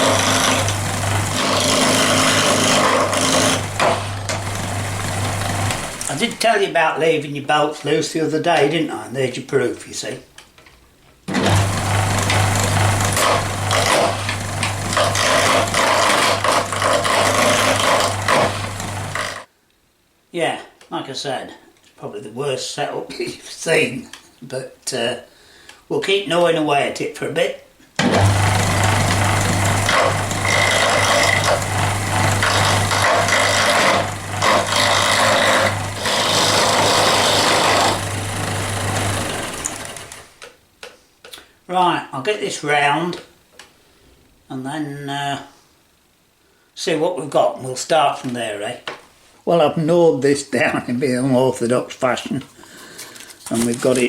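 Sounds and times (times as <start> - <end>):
lathe motor humming: 0.0 - 6.2, 11.3 - 19.5, 28.1 - 40.3
cutting tool scraping wood: 0.0 - 6.4, 11.3 - 19.5, 28.1 - 40.3.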